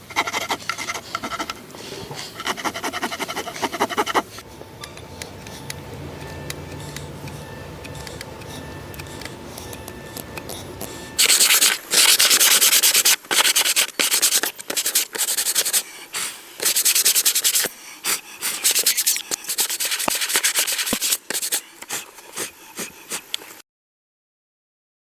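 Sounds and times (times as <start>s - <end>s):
sandpaper rubbing on wood: 2.3s - 4.4s, 10.5s - 23.6s.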